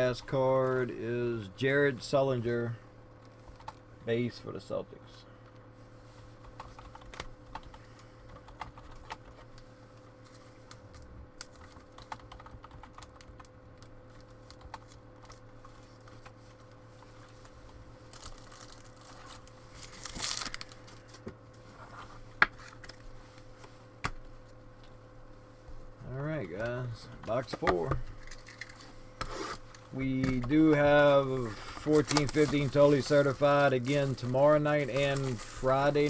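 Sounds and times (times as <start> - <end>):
steady low hum: 0.0 - 36.0
typing on computer keyboard: 6.6 - 9.4, 11.5 - 13.5.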